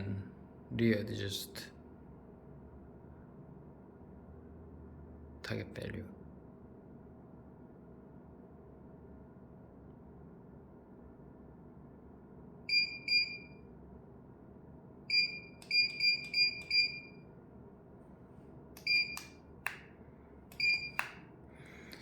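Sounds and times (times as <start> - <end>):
high-pitched key beeps: 12.7 - 13.6, 15.1 - 17.2, 18.8 - 19.3, 20.6 - 21.1.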